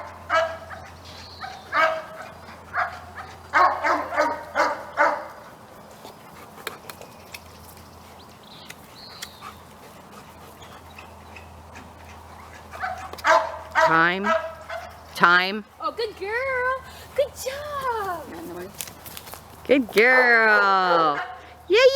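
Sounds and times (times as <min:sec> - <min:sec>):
dog barking: 0:00.0 - 0:00.9, 0:01.5 - 0:05.4, 0:12.8 - 0:15.0, 0:21.1 - 0:21.4.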